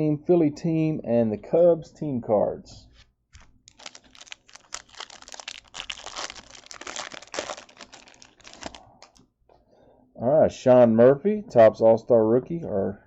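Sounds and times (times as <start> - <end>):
foil wrapper tearing and crinkling: 3.4 - 9.2.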